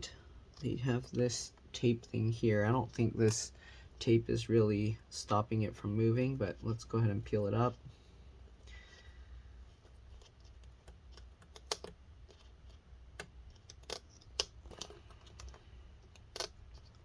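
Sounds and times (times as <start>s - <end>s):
fingers clicking small parts: 10.1s - 17.0s.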